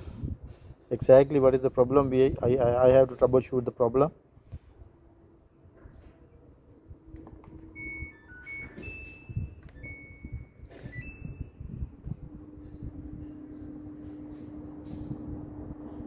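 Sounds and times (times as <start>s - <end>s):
steady low hum: 4.2s - 16.0s
washing machine beeps: 7.7s - 14.8s.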